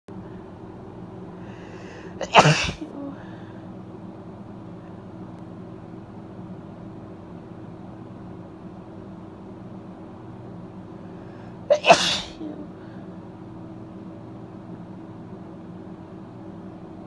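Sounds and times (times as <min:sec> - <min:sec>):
low room hum: 0:00.1 - 0:17.0
short in-breath: 0:01.4 - 0:02.2, 0:03.1 - 0:03.7
woman sneezing: 0:02.2 - 0:03.3, 0:11.7 - 0:12.6.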